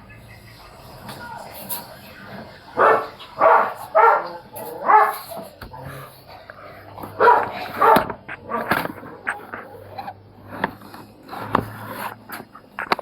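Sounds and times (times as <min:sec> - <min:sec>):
dog barking: 0:02.8 - 0:06.0, 0:07.0 - 0:09.9.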